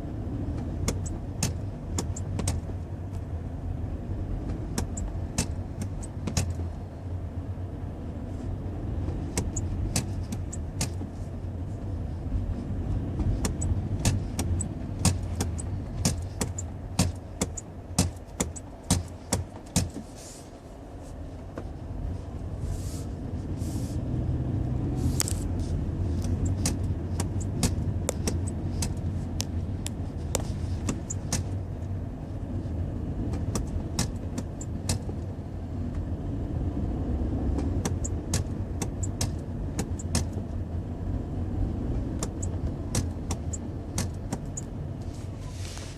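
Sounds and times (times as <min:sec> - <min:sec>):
road and cabin rumble: 0:00.0 - 0:45.9
sharp clicks and knocks: 0:00.5 - 0:03.2, 0:04.4 - 0:06.7, 0:09.0 - 0:11.2, 0:13.1 - 0:20.1, 0:25.2 - 0:31.6, 0:33.3 - 0:35.3, 0:37.5 - 0:40.6, 0:42.0 - 0:44.7.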